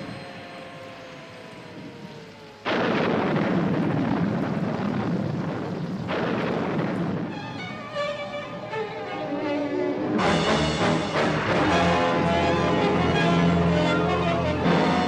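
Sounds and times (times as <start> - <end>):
falling engine whine: 0.0 - 15.0
loud rumble: 0.0 - 15.0.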